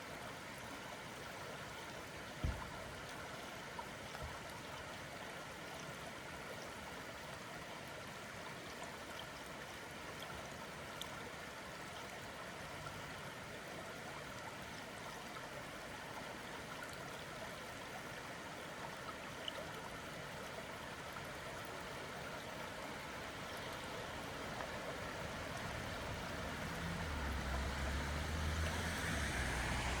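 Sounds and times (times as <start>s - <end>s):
creek water flowing: 0.0s - 30.0s
thump: 2.4s - 2.8s.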